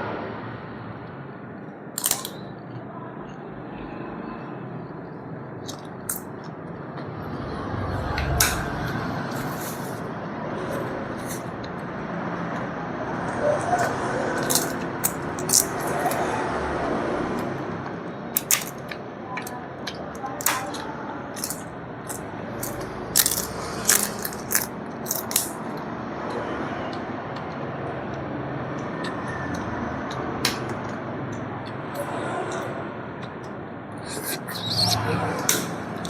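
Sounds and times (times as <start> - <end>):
steady background noise: 0.0 - 36.0
chewing crisp food: 13.7 - 16.6, 18.4 - 36.0.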